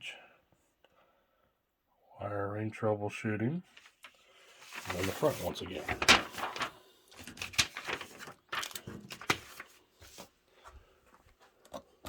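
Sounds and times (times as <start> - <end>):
paper and cardboard rustling: 3.7 - 10.4.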